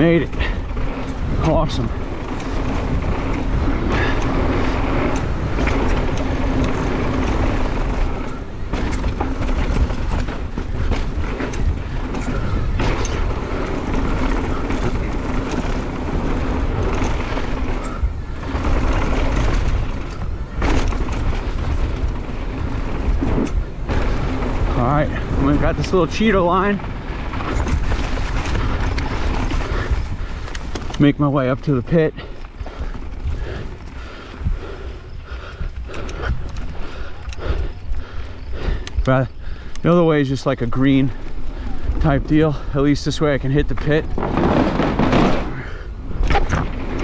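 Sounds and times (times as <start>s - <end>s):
bike knocking and rattling: 0.0s - 47.0s
bike tyre noise on dirt: 0.0s - 47.0s
wind rush on microphone: 0.0s - 47.0s.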